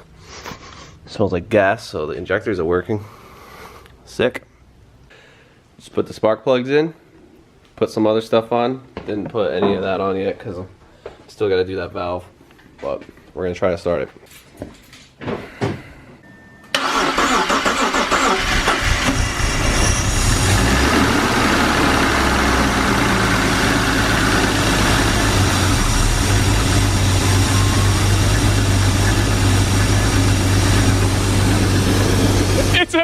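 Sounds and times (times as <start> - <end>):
car starter cranking: 16.7 - 20.5
car engine idling: 16.8 - 33.0.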